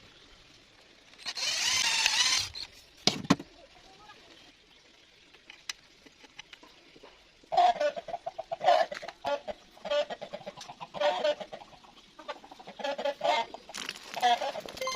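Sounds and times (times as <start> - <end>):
chicken clucking: 7.5 - 14.9.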